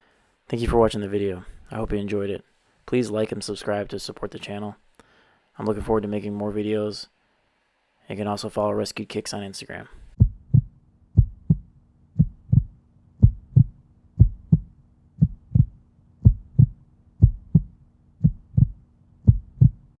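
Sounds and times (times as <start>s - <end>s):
faint hum: 0.0s - 20.0s
low double thump: 10.2s - 19.8s.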